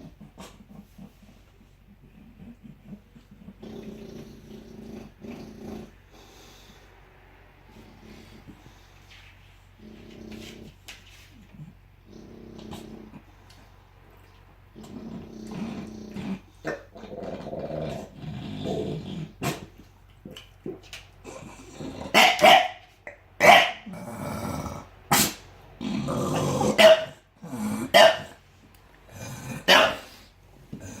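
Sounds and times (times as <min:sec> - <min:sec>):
dog growling low: 0:00.0 - 0:06.9, 0:07.6 - 0:08.9, 0:09.8 - 0:13.8, 0:14.7 - 0:22.2, 0:23.8 - 0:25.1, 0:25.8 - 0:28.0, 0:29.1 - 0:31.0
dog barking sharply: 0:22.2 - 0:22.8, 0:23.4 - 0:23.8.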